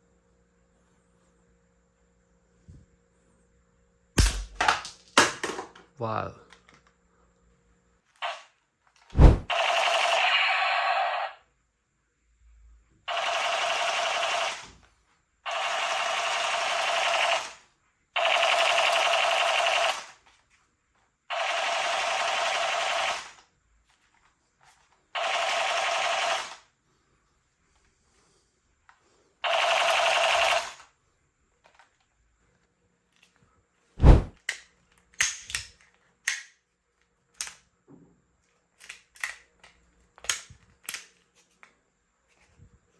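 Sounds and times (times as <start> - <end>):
toy gun motor buzzing: 8.2 - 8.5, 9.5 - 11.4, 13.1 - 14.8, 15.5 - 20.2, 21.3 - 23.4, 25.2 - 26.7, 29.4 - 30.9.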